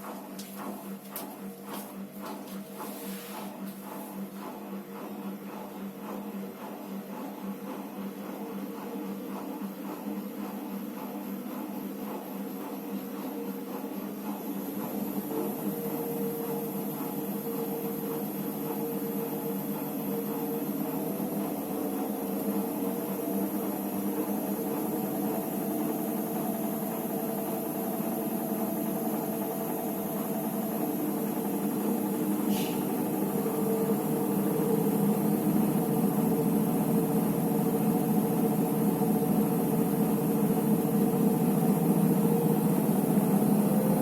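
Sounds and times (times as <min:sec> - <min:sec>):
washing machine humming: 0:00.0 - 0:44.0.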